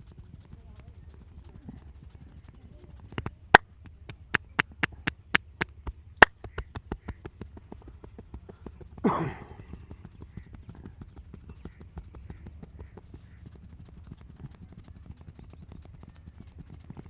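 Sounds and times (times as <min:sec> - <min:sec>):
hands tapping on head: 0:04.4 - 0:05.7.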